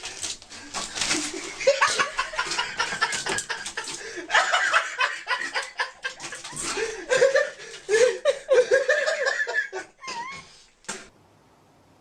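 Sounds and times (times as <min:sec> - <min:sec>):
people laughing: 0:01.2 - 0:10.4.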